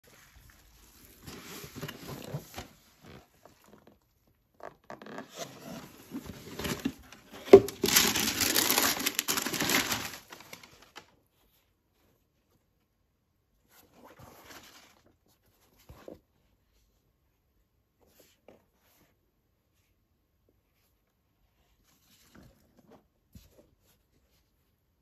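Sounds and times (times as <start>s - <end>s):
packaging rustling and crinkling: 0.4s - 3.9s, 5.0s - 11.2s.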